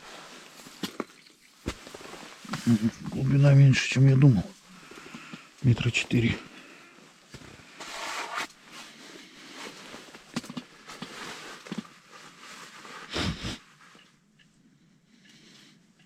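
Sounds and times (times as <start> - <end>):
clothing and gear rustling: 0.0 - 3.5, 4.5 - 14.2.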